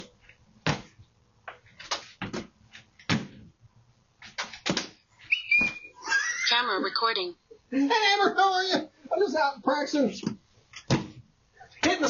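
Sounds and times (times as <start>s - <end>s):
knocks and thuds: 3.1s - 3.5s.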